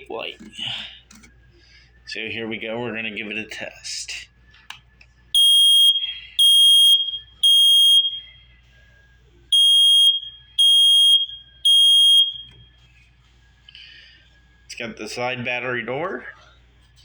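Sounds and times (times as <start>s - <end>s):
smoke alarm beeping: 5.3s - 8.5s, 9.5s - 12.9s.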